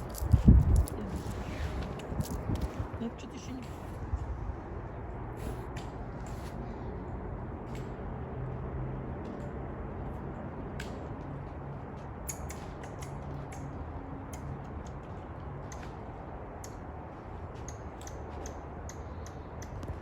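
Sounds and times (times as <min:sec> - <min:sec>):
squirrel gnawing and cracking food: 0:00.0 - 0:01.4.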